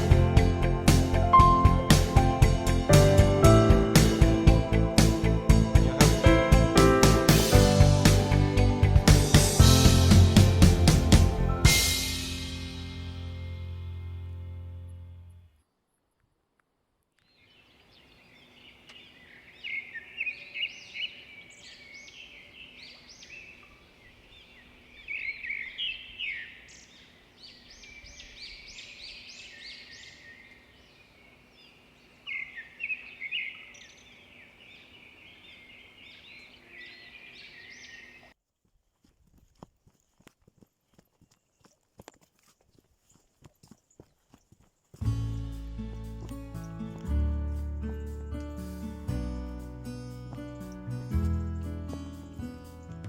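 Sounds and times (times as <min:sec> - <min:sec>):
birds chirping and singing: 0:17.2 - 0:38.3.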